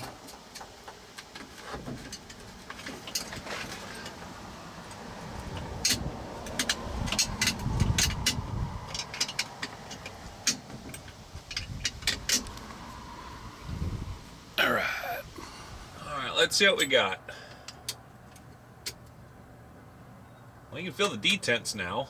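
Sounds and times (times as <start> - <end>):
rumbling handling noise: 0.0 - 16.0
sharp metallic clicks and clunks: 4.9 - 12.7.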